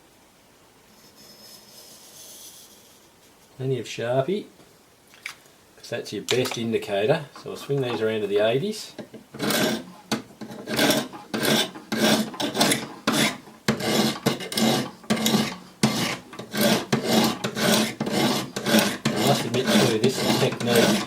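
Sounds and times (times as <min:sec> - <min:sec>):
sharpening stones rasping on blade: 0:09.4 - 0:21.0.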